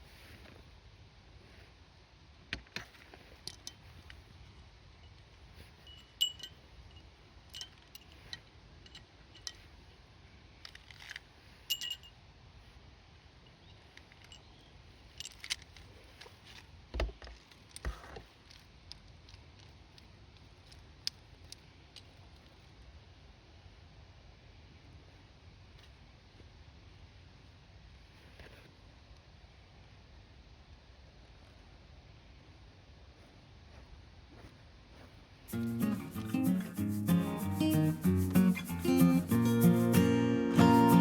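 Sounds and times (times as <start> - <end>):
light metallic clinks: 5.0 - 9.9, 11.7 - 12.2.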